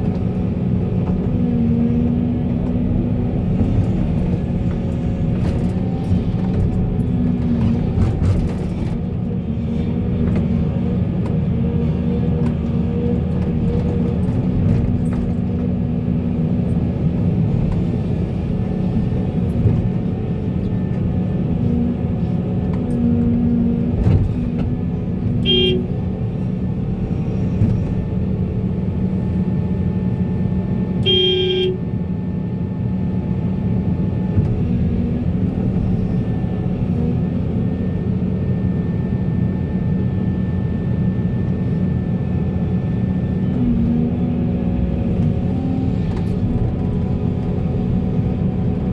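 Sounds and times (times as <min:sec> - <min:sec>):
heavy machinery engines running: 0:00.0 - 0:48.9
short horn toots: 0:25.4 - 0:25.9, 0:31.0 - 0:31.8.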